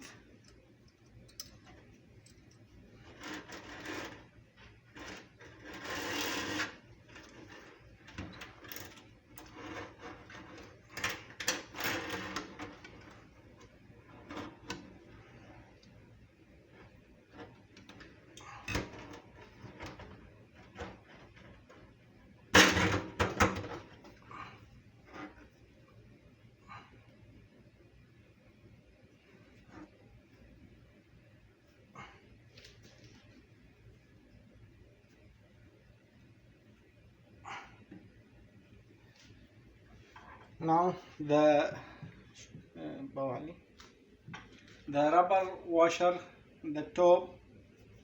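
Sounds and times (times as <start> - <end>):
scraping and rustling of parts: 1.4 - 15.9.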